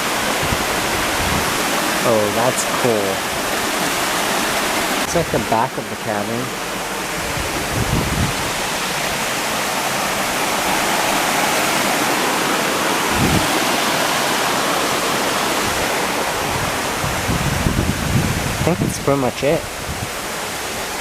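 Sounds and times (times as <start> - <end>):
small waterfall rushing: 0.0 - 21.0
dull low thumps: 6.5 - 9.0.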